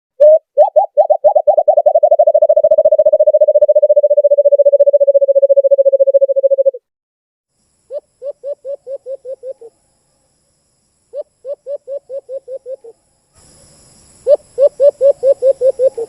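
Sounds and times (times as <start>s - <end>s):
dove hooting and trilling: 0.2s - 6.8s, 7.9s - 9.8s, 11.2s - 13.0s, 14.2s - 16.0s.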